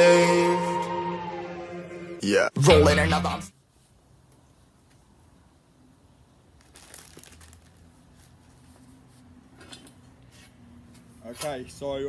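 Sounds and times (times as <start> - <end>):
rustling and handling noises: 6.5 - 11.6.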